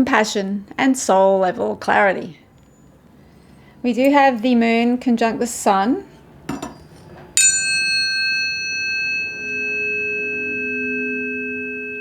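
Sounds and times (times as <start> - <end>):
tuning fork ringing: 7.4 - 12.0
lower steady tones: 7.8 - 12.0.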